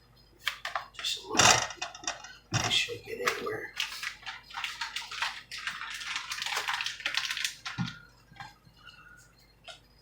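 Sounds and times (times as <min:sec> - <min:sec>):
crackling hiss of sprinkling: 0:03.2 - 0:08.1.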